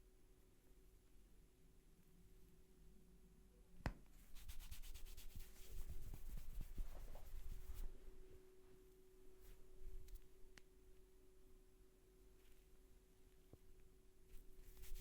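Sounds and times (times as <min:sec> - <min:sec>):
faint steady hum: 0:00.0 - 0:15.0
hands rubbing through hair: 0:04.2 - 0:08.0, 0:14.3 - 0:15.0.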